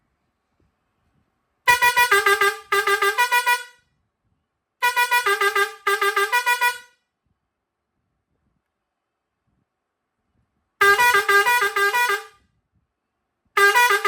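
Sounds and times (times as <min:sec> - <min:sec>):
air horn playing stuttering tune: 0:01.7 - 0:03.8, 0:04.8 - 0:06.9, 0:10.8 - 0:12.4, 0:13.6 - 0:14.0.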